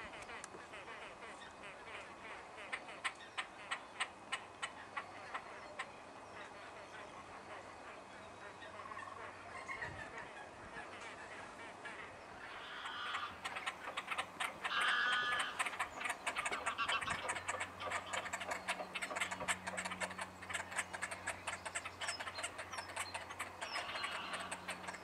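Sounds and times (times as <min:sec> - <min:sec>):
grebes calling: 0:00.0 - 0:25.0
louder tuneful bird call: 0:11.8 - 0:25.0.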